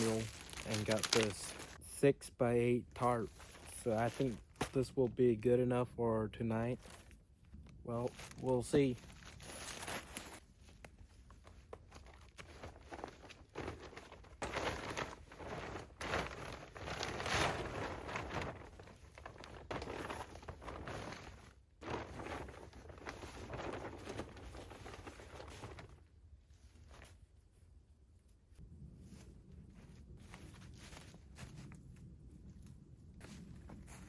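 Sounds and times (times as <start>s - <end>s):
plastic tarp rustling: 0.0s - 1.8s, 3.0s - 4.9s, 6.7s - 7.2s, 7.9s - 27.2s
wind rumble on microphone: 28.6s - 34.0s.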